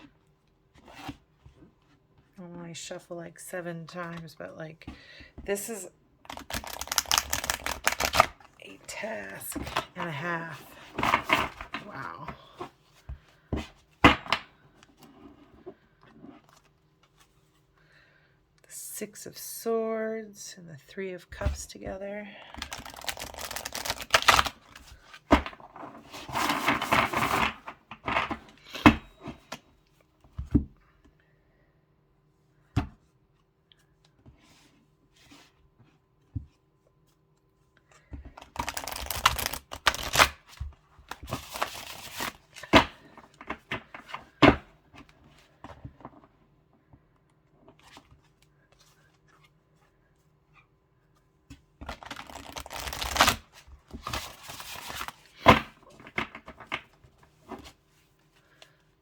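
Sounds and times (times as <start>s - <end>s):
cards shuffling: 5.5s - 12.4s, 22.5s - 29.0s, 38.4s - 40.5s, 41.2s - 43.5s, 51.8s - 56.6s.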